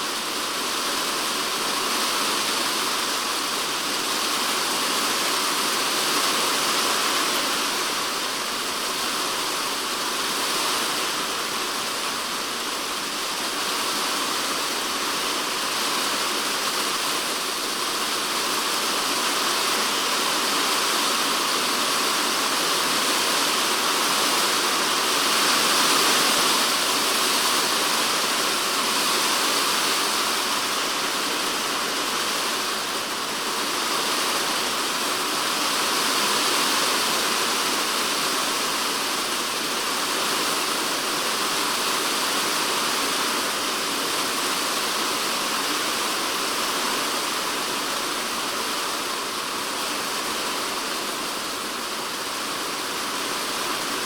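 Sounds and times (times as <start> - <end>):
heavy rain on shed roof: 0.0 - 54.0.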